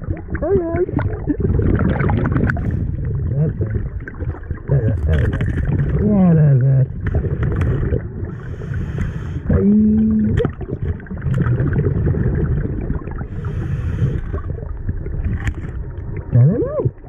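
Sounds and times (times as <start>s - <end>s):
exhaled bubbles rumbling: 0.0s - 17.0s
regulator inhale hiss: 8.3s - 9.5s, 13.3s - 14.4s.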